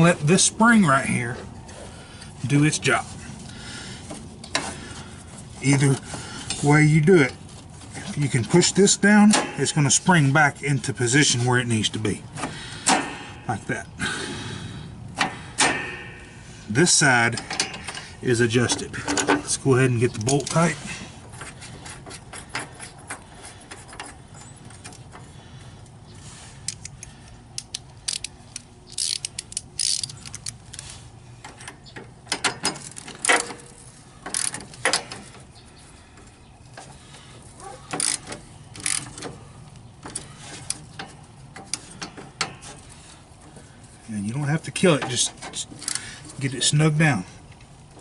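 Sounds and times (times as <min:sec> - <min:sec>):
ratchet wrench clicking: 0:26.7 - 0:30.8, 0:34.3 - 0:35.0, 0:37.9 - 0:39.3, 0:45.8 - 0:46.0.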